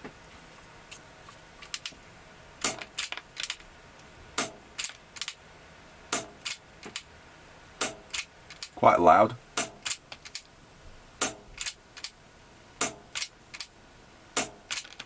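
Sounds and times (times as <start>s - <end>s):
airsoft pistol shots: 12.8s - 13.0s, 14.4s - 14.6s.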